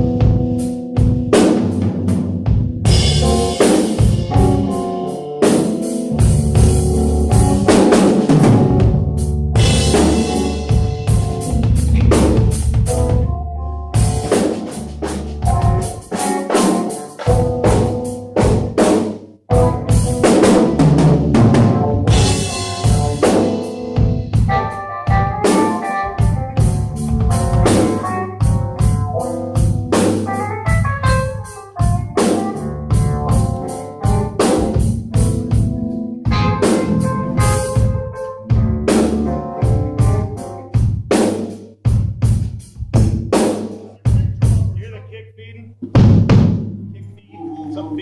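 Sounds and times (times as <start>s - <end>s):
bass drum: 0.0s - 4.8s, 6.0s - 44.9s, 45.8s - 47.1s
live band playing: 0.0s - 44.8s.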